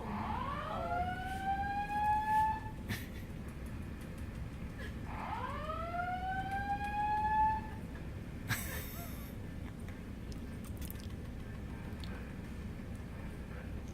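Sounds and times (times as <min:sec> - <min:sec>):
rising fire alarm siren: 0:00.0 - 0:02.9, 0:05.0 - 0:07.9
steady low rumble: 0:07.6 - 0:13.9.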